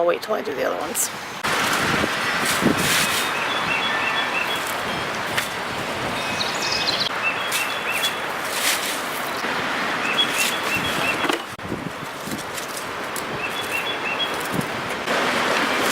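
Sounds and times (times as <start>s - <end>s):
wind noise: 1.0s - 15.9s
songbird chirping: 2.1s - 8.6s, 9.3s - 11.6s, 12.9s - 15.0s
short rustles or clicks: 8.4s - 9.4s.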